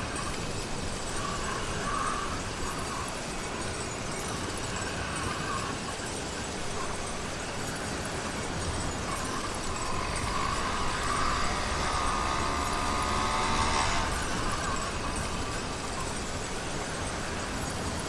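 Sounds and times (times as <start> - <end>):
two-stroke engine buzzing: 7.9 - 18.0.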